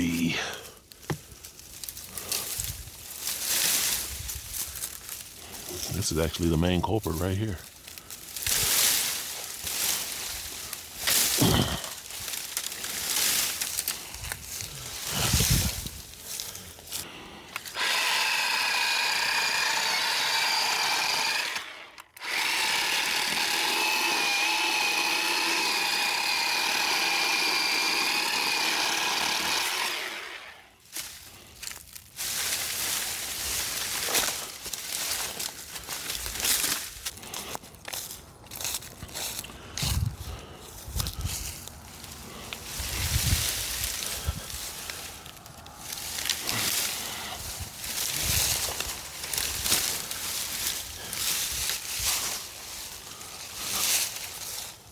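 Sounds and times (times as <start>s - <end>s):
branches rustling and crackling: 0.0s - 54.9s
electric chainsaw whine: 8.6s - 12.1s, 17.5s - 30.8s, 41.1s - 54.8s.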